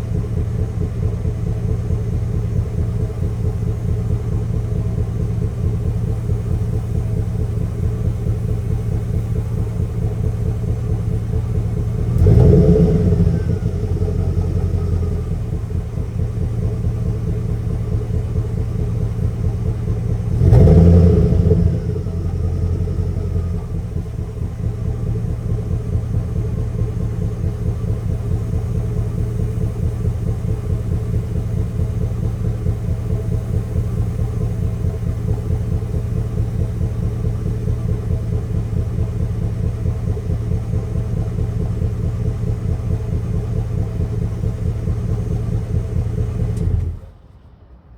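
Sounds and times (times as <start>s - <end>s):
engine idling unevenly: 0.0s - 47.9s
engine revving: 11.6s - 15.6s, 18.8s - 32.8s.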